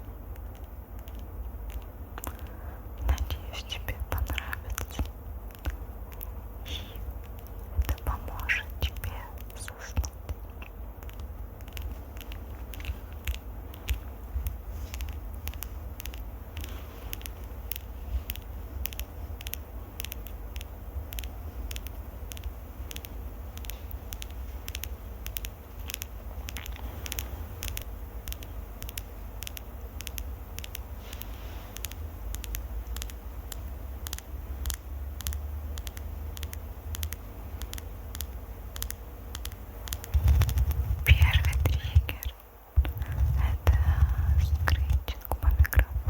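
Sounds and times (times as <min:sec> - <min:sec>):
crisp clicks and crackles: 0:00.0 - 0:46.0
low rumble: 0:40.1 - 0:46.0.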